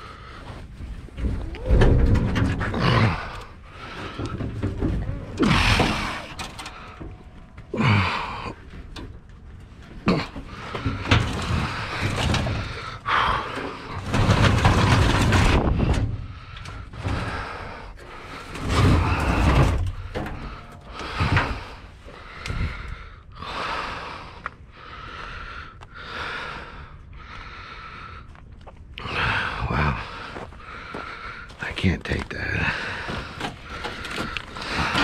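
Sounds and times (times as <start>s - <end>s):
objects scraping and rustling: 0.0s - 7.7s, 8.6s - 22.9s, 30.3s - 35.0s
objects knocking and banging: 0.8s - 8.1s, 8.8s - 22.8s, 32.8s - 35.0s.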